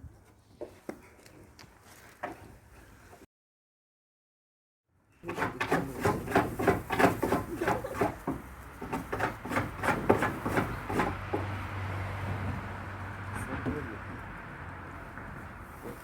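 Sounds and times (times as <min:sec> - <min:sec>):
hooves knocking against fence: 0:05.3 - 0:11.8.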